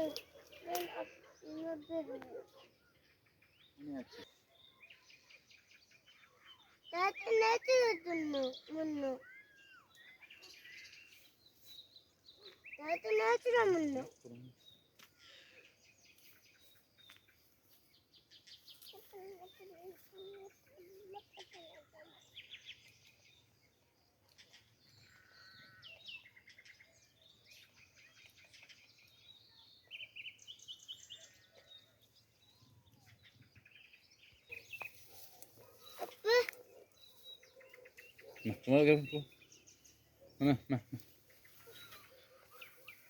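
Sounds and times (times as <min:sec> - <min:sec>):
faint birds chirping: 0:00.0 - 0:43.0.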